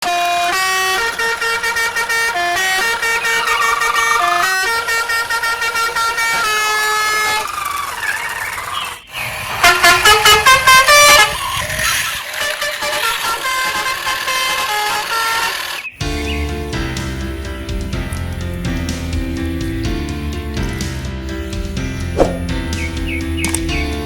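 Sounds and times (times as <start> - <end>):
tune in horn-like tones: 0.0 - 15.6.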